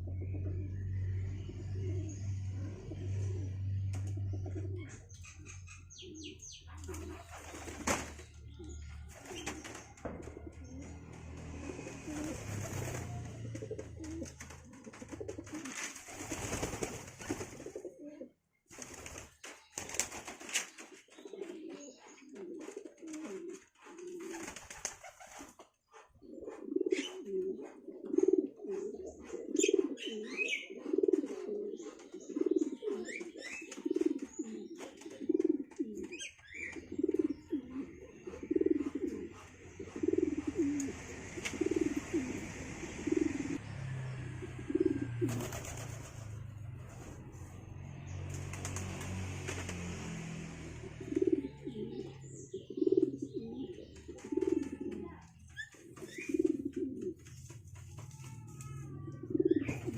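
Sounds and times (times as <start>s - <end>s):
pigeons cooing: 0.0s - 59.9s
wings flapping: 6.8s - 8.4s, 9.1s - 10.4s, 11.1s - 17.8s, 18.7s - 26.1s, 45.1s - 47.5s, 48.2s - 50.5s.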